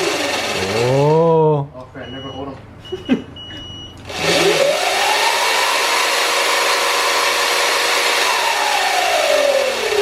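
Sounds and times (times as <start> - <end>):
electric motor whine: 4.1 - 10.0.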